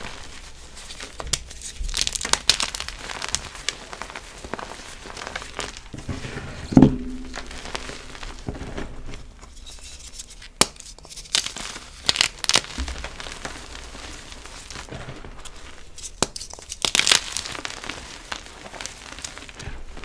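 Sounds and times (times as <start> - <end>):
chalk block crunching and crackling: 0.0 - 19.8
crisp snaps: 0.1 - 5.9, 10.2 - 20.0
thump with ringing note: 6.1 - 8.8.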